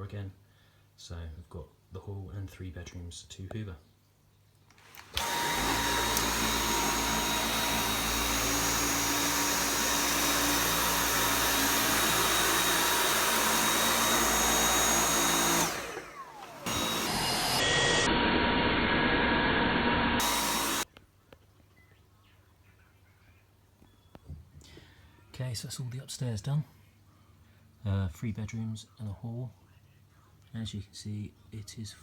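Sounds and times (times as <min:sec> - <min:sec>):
stick vacuum whining on carpet: 0:04.8 - 0:20.8.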